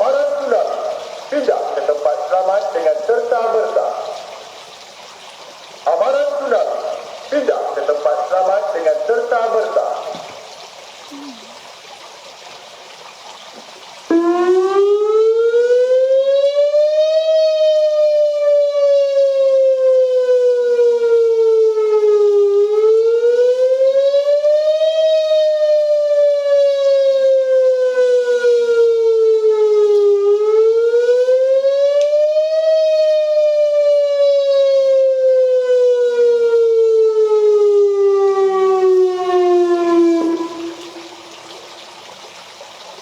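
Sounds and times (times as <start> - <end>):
electronic siren wailing: 14.1 - 41.3.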